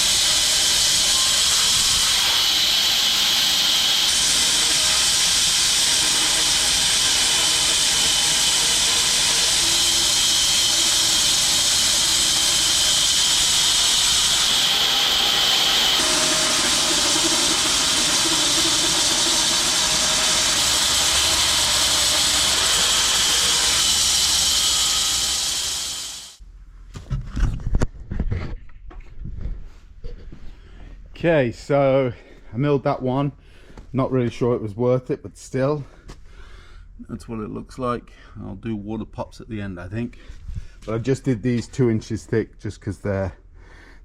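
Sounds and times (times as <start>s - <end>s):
bandsaw mill sawing log: 0.0s - 26.4s.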